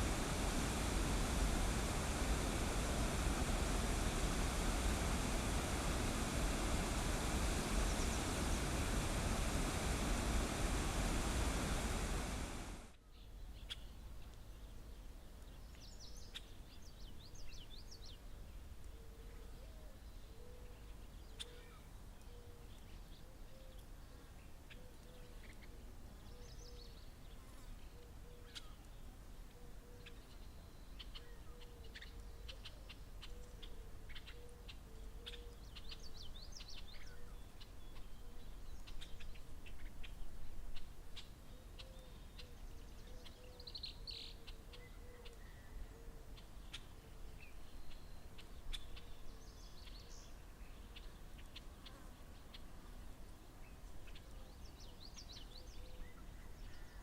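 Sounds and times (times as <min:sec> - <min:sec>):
steady low rumble: 0:00.0 - 0:12.9.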